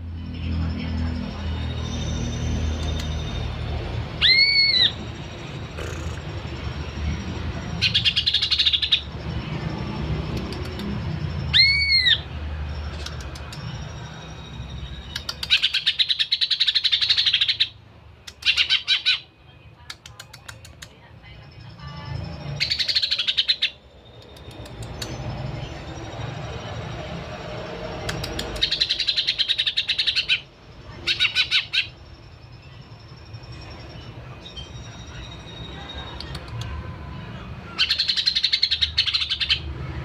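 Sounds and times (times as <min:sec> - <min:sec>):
loud bird whistle: 0:04.2 - 0:05.0.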